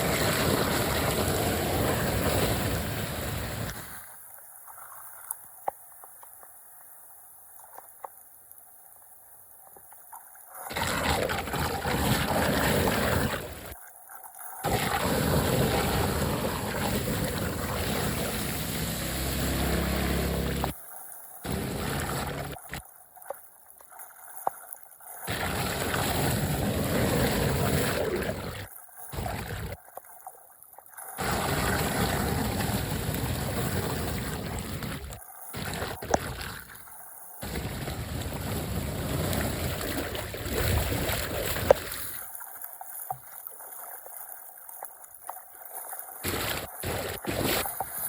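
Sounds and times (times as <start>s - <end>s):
floodwater rushing into a drain: 0.0s - 4.0s, 10.6s - 13.8s, 14.6s - 20.8s, 21.4s - 22.8s, 25.3s - 29.8s, 31.2s - 36.8s, 37.4s - 42.2s.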